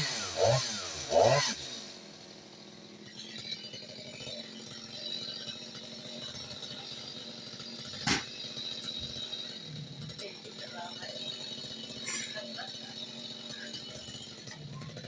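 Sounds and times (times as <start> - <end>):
chainsaw idling: 0.0 - 15.0
sharp knock: 8.0 - 8.3.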